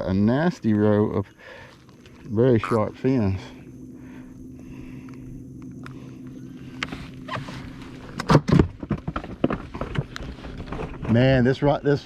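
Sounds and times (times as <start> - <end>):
steady low hum: 0.0 - 12.0
fish flapping and clattering in boat: 6.9 - 11.8.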